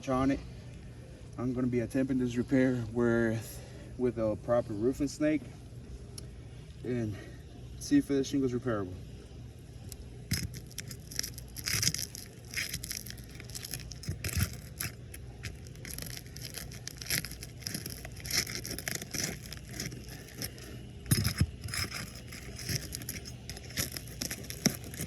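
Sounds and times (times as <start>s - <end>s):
steady low rumble: 9.9s - 25.0s
metal tool scraping shingle: 10.3s - 25.0s.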